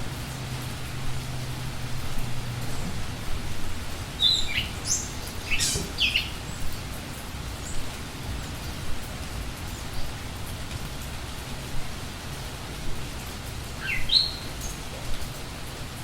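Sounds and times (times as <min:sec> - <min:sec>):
steady rain: 0:00.0 - 0:16.0
birds chirping: 0:02.6 - 0:06.8, 0:13.6 - 0:15.2.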